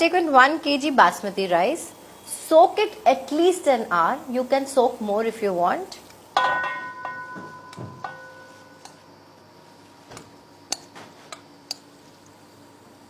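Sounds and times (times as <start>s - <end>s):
utensil striking steel pot: 6.4s - 9.0s.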